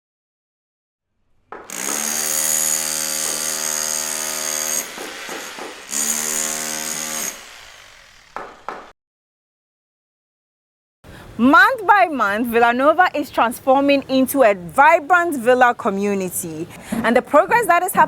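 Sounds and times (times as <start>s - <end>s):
power tool whining: 1.6s - 8.9s.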